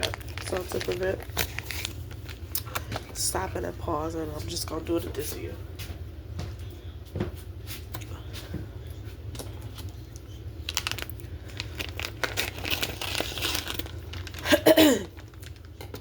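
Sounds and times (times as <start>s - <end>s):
plastic packaging crinkling: 0.0s - 3.2s, 9.4s - 16.0s.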